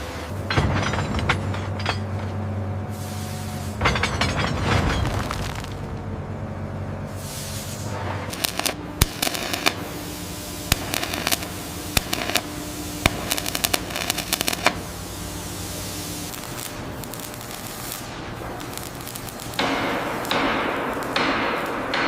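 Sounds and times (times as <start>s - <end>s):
steady hiss: 2.8s - 3.8s, 7.1s - 22.0s
sharp clicks and cracks: 16.3s - 22.0s.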